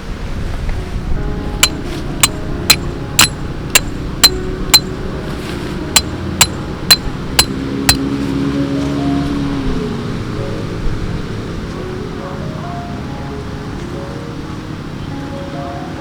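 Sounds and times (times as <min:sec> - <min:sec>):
hammer striking metal stake: 0:01.6 - 0:04.9, 0:06.0 - 0:08.0.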